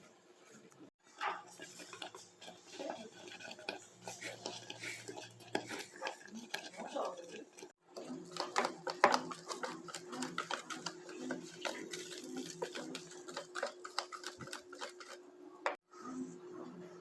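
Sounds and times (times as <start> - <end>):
utensil tapping against bowl: 4.4 - 7.6, 8.3 - 15.2.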